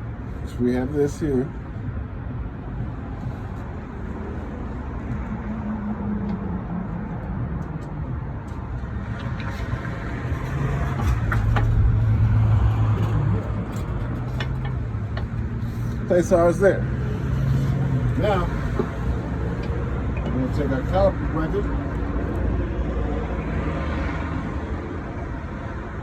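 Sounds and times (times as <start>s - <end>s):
vehicle engine running: 7.4s - 20.8s.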